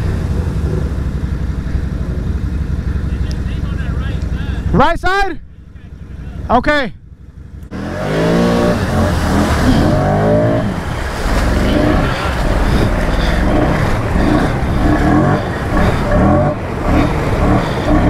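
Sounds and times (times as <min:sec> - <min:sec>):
quad engine revving: 0:07.6 - 0:18.0
rough rushing noise: 0:07.7 - 0:18.0.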